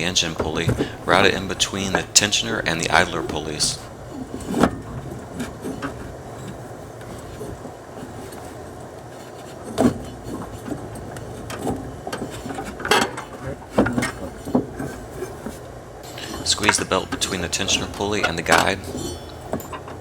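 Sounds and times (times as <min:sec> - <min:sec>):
knocks and clunks: 0:00.0 - 0:03.9.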